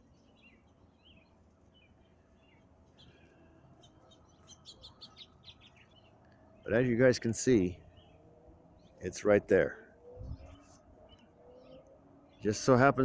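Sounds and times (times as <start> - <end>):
faint bird chirps: 0.0 - 6.8, 9.7 - 12.7.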